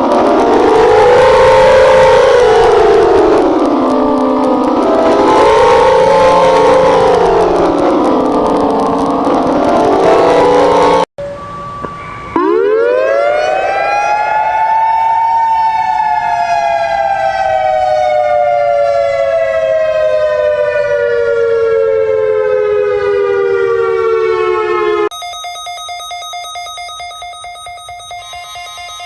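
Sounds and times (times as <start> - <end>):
emergency alert siren winding: 0.0 - 29.0
electronic beeping tone pattern: 7.8 - 12.7, 25.1 - 29.0.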